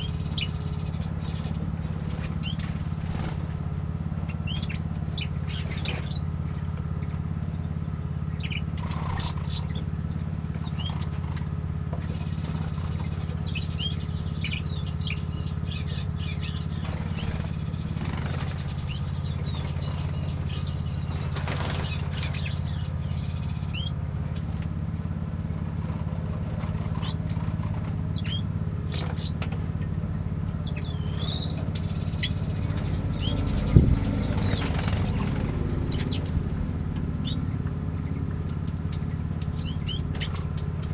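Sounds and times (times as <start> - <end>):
small birds chirping: 0.0 - 40.9
low hum: 29.8 - 40.9.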